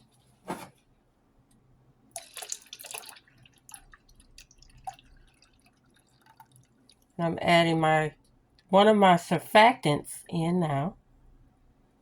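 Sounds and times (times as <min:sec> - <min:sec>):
drips and small splashes: 0:02.1 - 0:07.2, 0:08.2 - 0:08.7
liquid pouring into container: 0:02.1 - 0:07.2.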